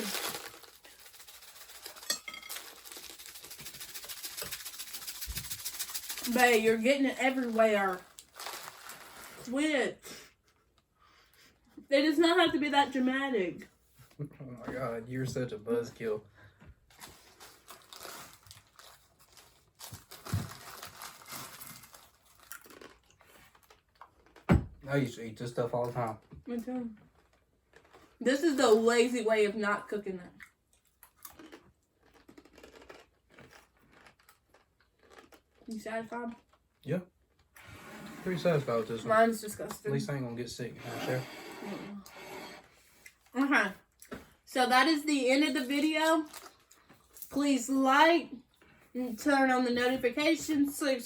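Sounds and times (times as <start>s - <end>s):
dry food rustling and clinking: 0.0s - 4.8s
plastic packet crinkling: 0.0s - 9.5s, 17.0s - 24.3s, 46.2s - 46.9s
dull thump: 24.5s - 24.8s.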